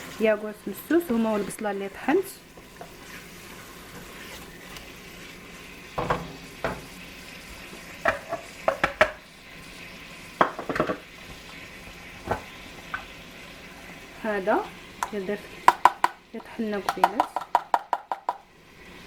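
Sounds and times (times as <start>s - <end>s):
meat sizzling in oil: 0.0s - 19.0s
utensil scraping cookware: 8.0s - 9.2s.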